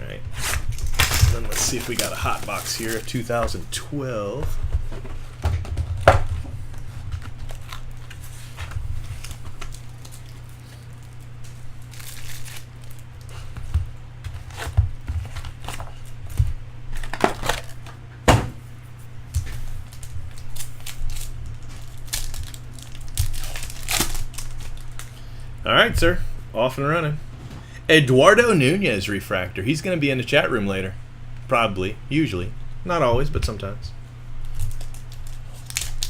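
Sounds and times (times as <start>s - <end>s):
steady low hum: 0.0s - 36.0s
plastic and foil crinkling: 0.3s - 4.1s, 6.0s - 13.7s, 14.3s - 17.9s, 19.3s - 25.3s, 34.4s - 36.0s.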